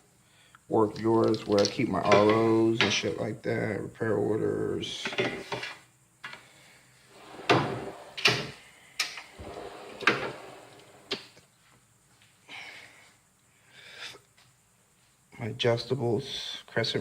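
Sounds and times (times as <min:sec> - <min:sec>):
metal drawers sliding on runners: 0:07.1 - 0:08.6, 0:09.2 - 0:11.2
sharp drawer clunks: 0:07.2 - 0:08.5, 0:09.4 - 0:11.2.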